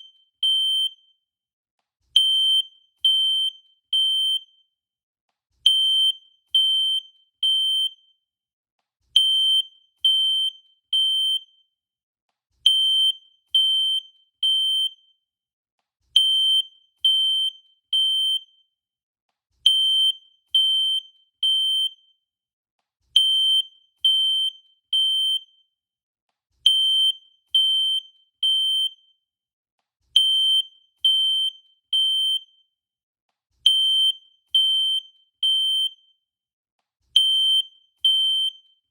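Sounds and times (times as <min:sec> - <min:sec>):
fire alarm high-pitched beeps: 0:00.0 - 0:01.2, 0:02.2 - 0:04.7, 0:05.7 - 0:08.2, 0:09.2 - 0:11.7, 0:12.7 - 0:15.2, 0:16.2 - 0:18.7, 0:19.7 - 0:22.2, 0:23.2 - 0:25.7, 0:26.7 - 0:29.2, 0:30.2 - 0:32.8, 0:33.7 - 0:36.2, 0:37.2 - 0:38.9.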